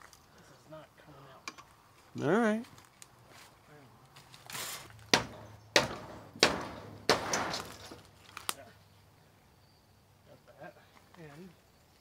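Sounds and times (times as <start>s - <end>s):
hammer knocking on wooden boards: 5.1s - 7.7s.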